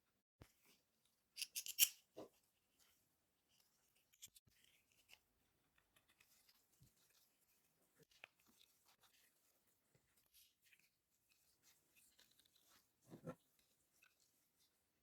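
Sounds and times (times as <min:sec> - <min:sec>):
small parts clicking and scraping: 0:01.4 - 0:02.0.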